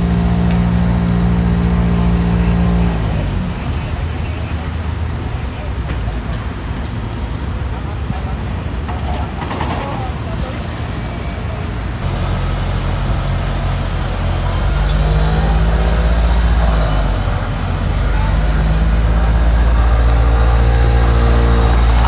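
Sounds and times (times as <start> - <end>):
heavy diesel engine droning: 0.0 - 5.7, 12.0 - 22.0.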